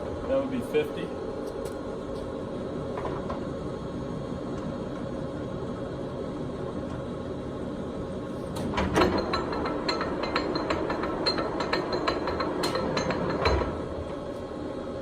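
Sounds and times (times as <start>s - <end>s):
lathe gear drive running: 8.5s - 15.0s.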